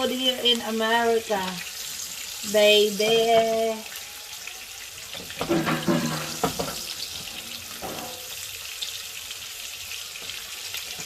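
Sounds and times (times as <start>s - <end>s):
meat sizzling in a pan: 0.0s - 11.0s.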